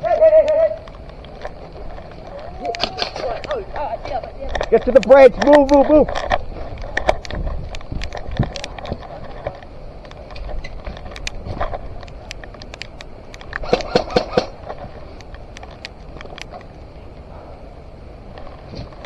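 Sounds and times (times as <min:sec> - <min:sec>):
low rumble of movement on microphone: 0:00.0 - 0:19.0
airsoft gunshots snapping: 0:13.6 - 0:14.7.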